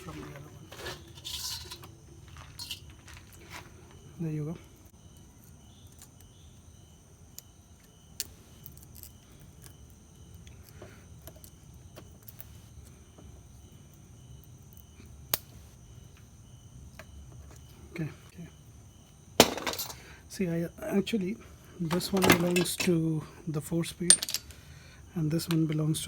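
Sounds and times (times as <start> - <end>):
metal parts clicking: 0.7 - 1.9, 21.9 - 23.0, 24.1 - 24.5.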